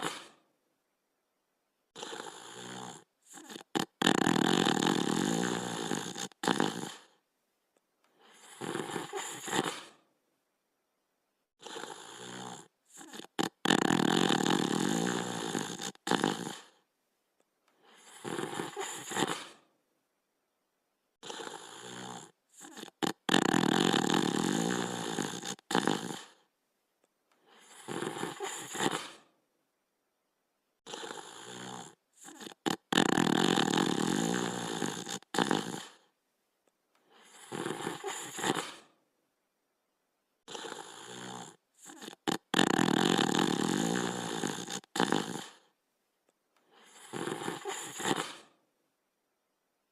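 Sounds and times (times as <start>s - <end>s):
cartoon dog snoring: 0.0s - 0.4s, 1.9s - 7.2s, 8.1s - 10.0s, 11.6s - 16.8s, 17.8s - 19.7s, 21.2s - 26.5s, 27.4s - 29.3s, 30.8s - 36.2s, 37.0s - 39.0s, 40.4s - 45.8s, 46.6s - 48.6s.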